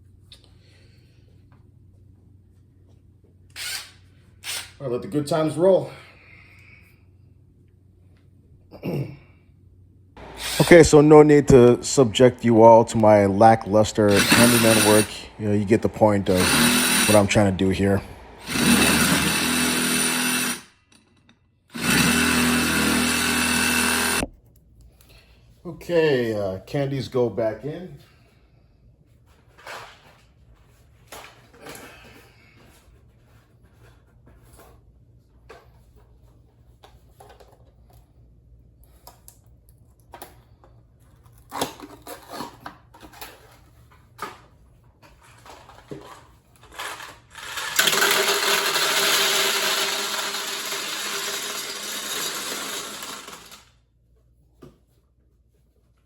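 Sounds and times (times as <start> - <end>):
hard candies rattling: 46.6 - 53.6
candies pouring into canister: 46.8 - 53.7.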